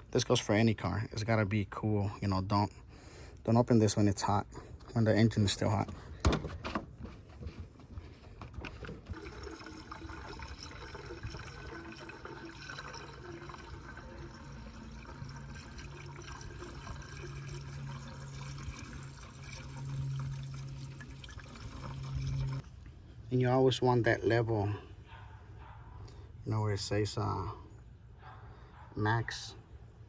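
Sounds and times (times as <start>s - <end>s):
liquid pouring from jug: 8.2s - 22.6s.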